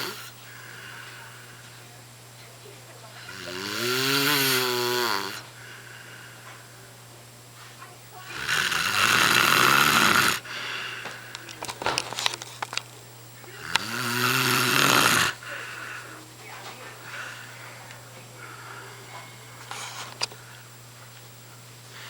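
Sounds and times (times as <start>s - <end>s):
man snoring loudly: 0.0s - 0.3s, 3.3s - 5.5s, 8.2s - 10.5s, 13.6s - 15.4s
steady low hum: 0.0s - 22.0s.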